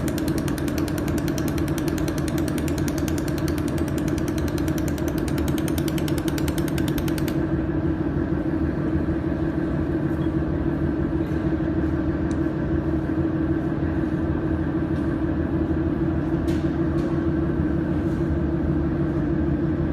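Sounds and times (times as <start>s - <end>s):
pulsed laser ticking: 0.0s - 7.4s
welding machine humming: 0.0s - 7.6s.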